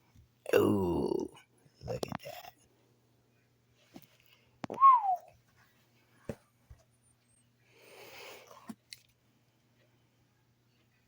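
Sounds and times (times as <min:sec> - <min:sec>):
soft rustle of handling: 0:03.6 - 0:04.6, 0:05.3 - 0:07.6.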